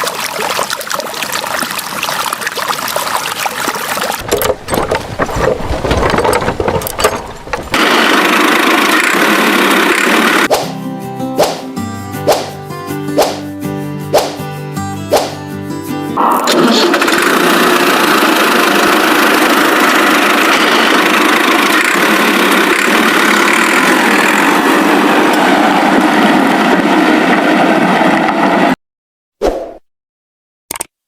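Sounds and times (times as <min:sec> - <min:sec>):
small motor running: 0:06.6 - 0:10.5, 0:16.8 - 0:25.0.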